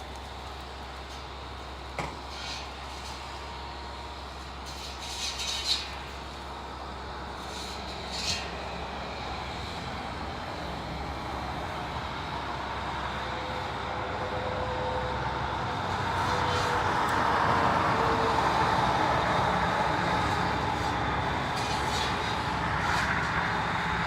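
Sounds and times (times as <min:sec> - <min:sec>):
large vehicle engine running: 0:00.0 - 0:24.0.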